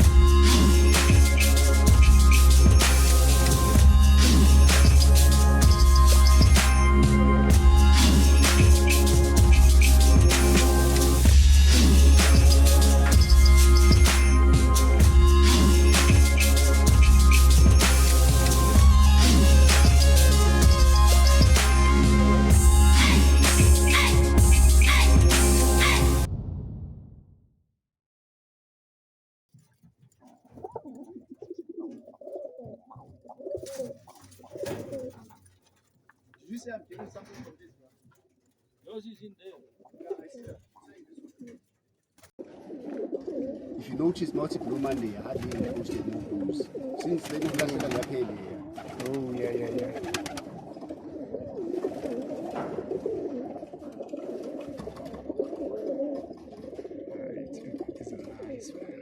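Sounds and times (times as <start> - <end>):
pigeons cooing: 22.5 - 26.3, 30.2 - 35.4, 39.6 - 41.6, 42.4 - 59.0.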